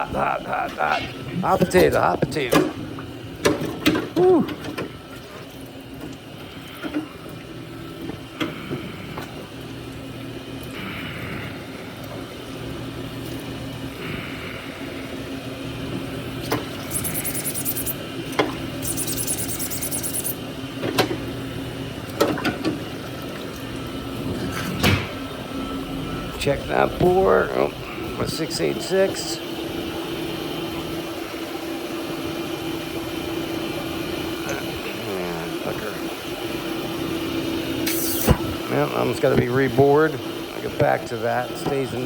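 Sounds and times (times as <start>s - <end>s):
metal lathe running: 16.7s - 18.1s, 18.8s - 20.4s.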